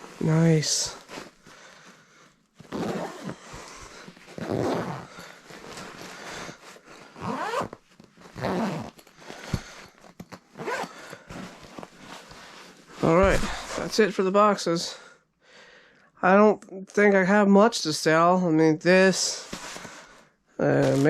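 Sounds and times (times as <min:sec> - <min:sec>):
bag being handled: 0:00.0 - 0:14.0, 0:20.8 - 0:21.0
zipper being pulled: 0:02.6 - 0:13.9.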